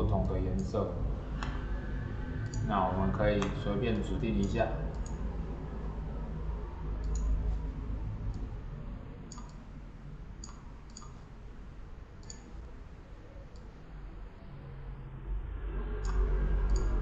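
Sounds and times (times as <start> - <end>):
steady low hum: 0.0 - 17.0
computer mouse clicks: 2.4 - 2.6, 4.4 - 5.2, 7.0 - 7.4, 9.3 - 9.6, 10.4 - 11.2, 12.2 - 12.5, 16.0 - 17.0.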